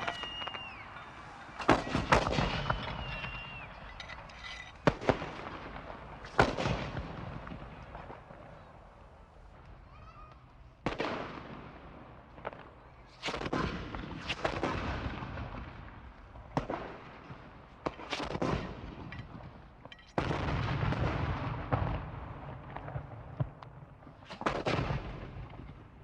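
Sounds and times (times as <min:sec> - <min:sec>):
gunshots echoing: 0:00.0 - 0:08.5.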